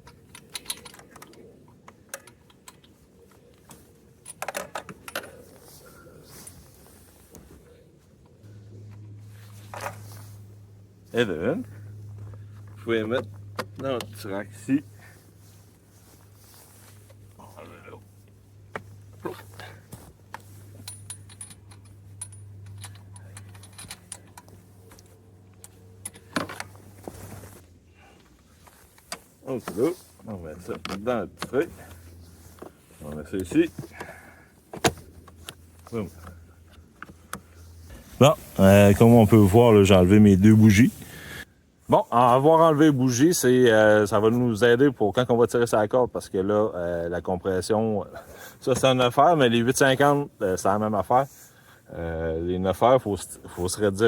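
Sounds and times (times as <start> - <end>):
wrench metallic clicks: 0.0 - 1.4
low hum: 3.4 - 29.2
metallic clatter: 20.4 - 24.6.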